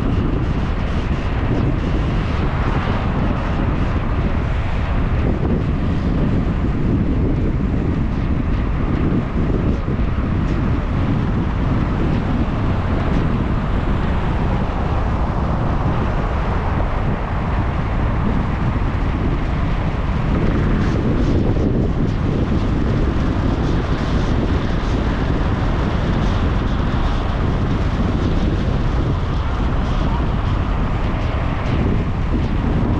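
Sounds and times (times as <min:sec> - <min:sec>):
vehicle running noise: 0:00.0 - 0:32.9
wind buffeting microphone: 0:00.0 - 0:32.9.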